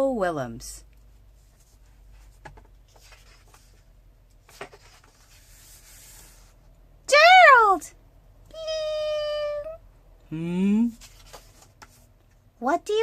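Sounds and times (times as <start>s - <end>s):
paper pages rustling: 1.4s - 6.6s, 11.0s - 12.1s.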